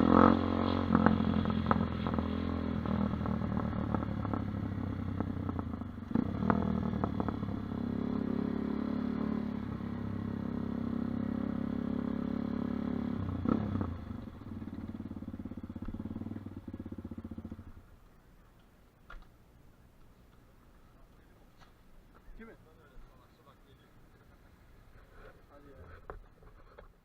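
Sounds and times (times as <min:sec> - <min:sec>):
dirt bike engine running: 0:00.0 - 0:17.9.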